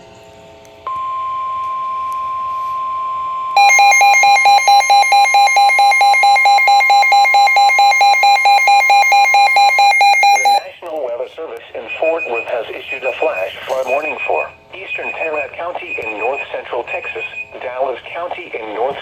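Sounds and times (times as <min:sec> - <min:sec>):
steady high tone: 0:00.9 - 0:10.7
rapidly pulsing alarm tone: 0:01.1 - 0:10.6.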